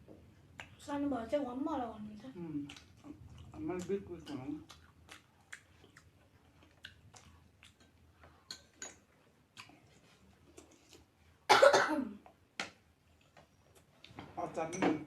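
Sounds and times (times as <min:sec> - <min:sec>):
woman coughing: 0:11.5 - 0:12.2.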